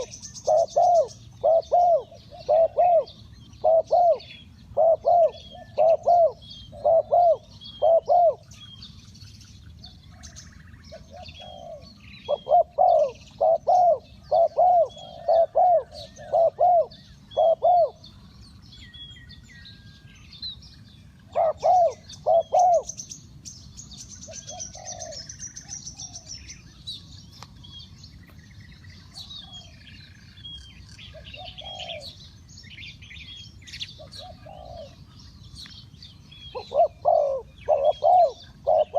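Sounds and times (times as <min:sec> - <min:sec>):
dove cooing: 0:00.0 - 0:08.6, 0:09.9 - 0:18.3, 0:21.2 - 0:23.0, 0:24.3 - 0:26.6, 0:29.1 - 0:30.0, 0:31.0 - 0:32.3, 0:33.9 - 0:35.1, 0:36.5 - 0:38.9
small birds chirping: 0:00.0 - 0:38.9.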